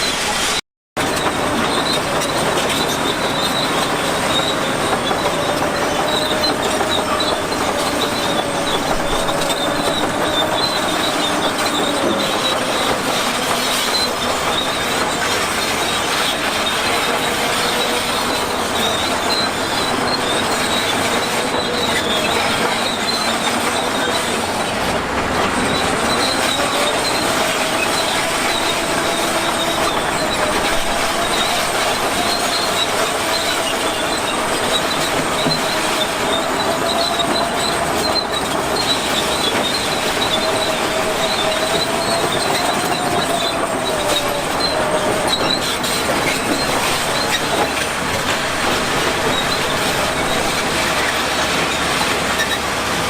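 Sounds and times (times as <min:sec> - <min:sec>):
crawler tracks squealing and clanking: 0:00.0 - 0:53.0
diesel engine running: 0:01.0 - 0:53.0.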